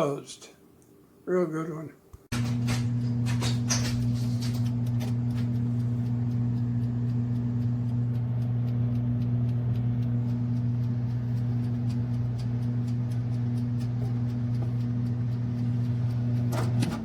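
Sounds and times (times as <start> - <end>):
air fryer oven humming: 2.3 - 17.0
faint ticks: 4.8 - 16.5.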